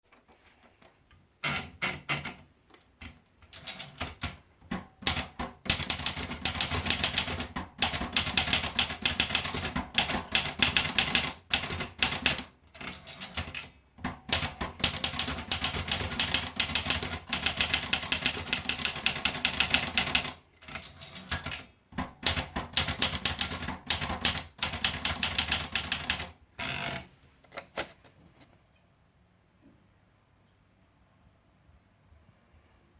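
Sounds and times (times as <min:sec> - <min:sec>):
manual typewriter typing: 0:01.4 - 0:02.4, 0:03.4 - 0:27.0.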